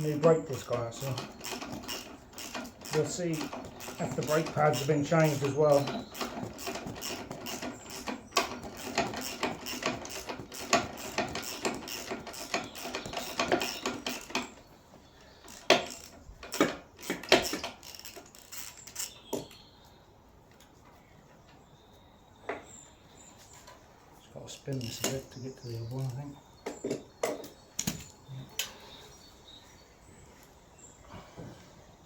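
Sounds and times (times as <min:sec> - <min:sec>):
socket ratchet clicking: 0:01.1 - 0:14.5.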